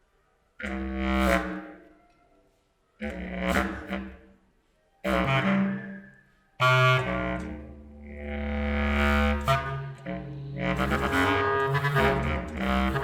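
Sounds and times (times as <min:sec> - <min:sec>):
clarinet trio playing: 0:00.6 - 0:01.6, 0:05.1 - 0:13.0.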